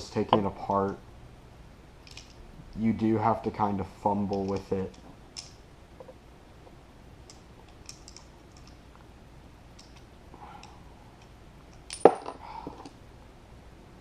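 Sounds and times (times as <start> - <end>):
light clicks of pistol parts: 7.3 - 8.8, 9.8 - 12.0.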